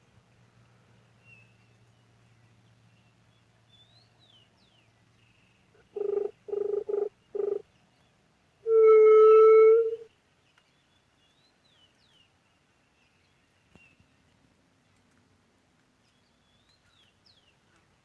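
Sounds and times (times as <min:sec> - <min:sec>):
dove whistle hoots: 0:08.7 - 0:10.0.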